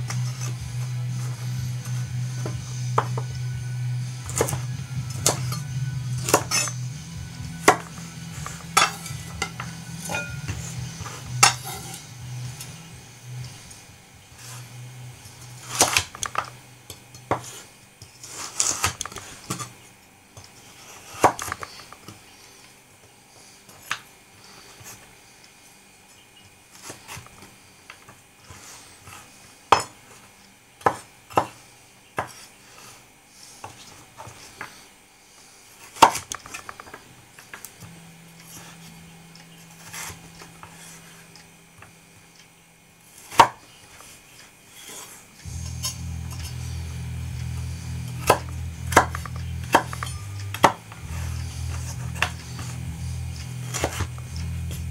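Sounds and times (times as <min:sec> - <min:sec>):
knife and dishes clinking: 0:05.2 - 0:06.9, 0:07.6 - 0:12.7, 0:44.8 - 0:46.6, 0:48.2 - 0:50.8
faint low hum: 0:36.4 - 0:54.9.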